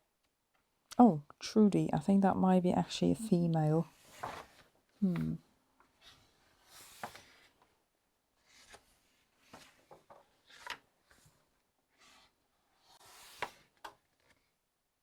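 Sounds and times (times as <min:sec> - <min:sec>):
book pages turning: 0:04.0 - 0:05.3, 0:06.0 - 0:07.6, 0:08.4 - 0:11.2, 0:12.0 - 0:14.5.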